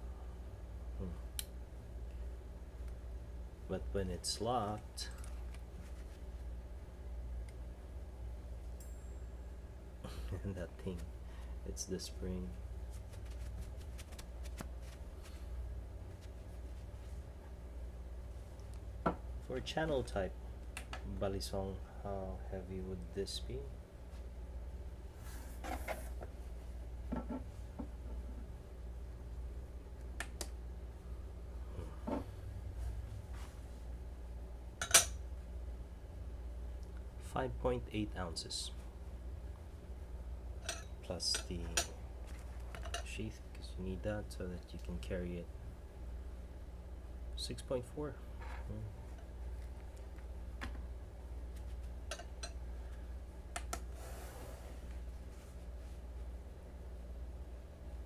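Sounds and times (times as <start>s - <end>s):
steady low hum: 0.0s - 58.0s
soft rustle: 5.2s - 6.4s, 12.5s - 17.3s, 54.0s - 56.3s.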